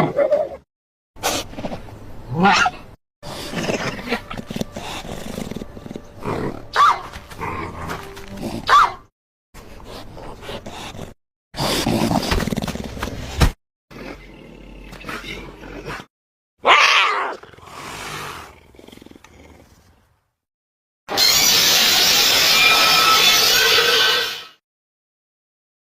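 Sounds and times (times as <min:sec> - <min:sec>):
animal roars and growls: 0:02.3 - 0:06.7, 0:11.6 - 0:19.9.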